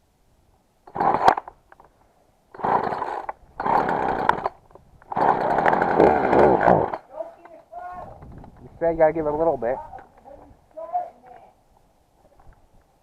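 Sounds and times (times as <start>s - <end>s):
chainsaw pull-starting: 0.9s - 1.5s, 2.5s - 7.2s.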